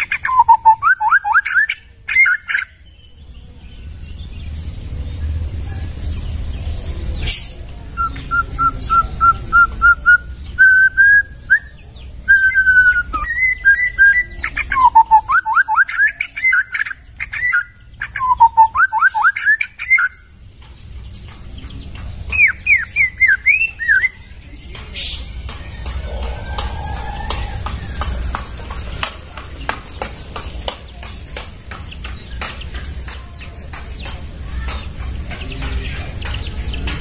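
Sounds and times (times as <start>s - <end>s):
bird singing whistled notes: 0.0s - 3.2s, 7.2s - 20.3s, 22.3s - 24.4s.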